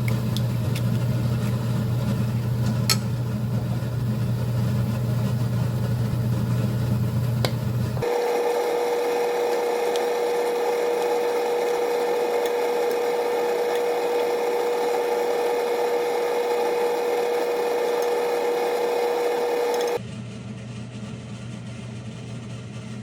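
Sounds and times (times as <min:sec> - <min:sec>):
small electric motor whirring: 0:08.0 - 0:20.0.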